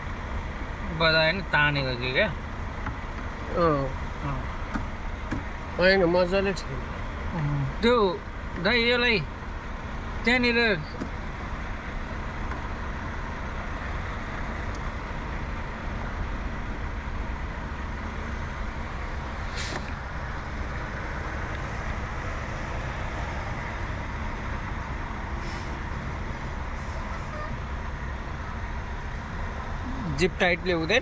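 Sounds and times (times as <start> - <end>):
diesel truck engine idling: 0.0 - 31.0
air hiss: 19.4 - 20.0.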